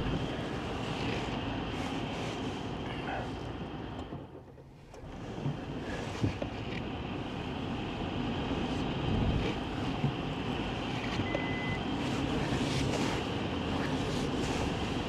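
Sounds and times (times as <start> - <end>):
car engine under load: 0.0 - 2.8.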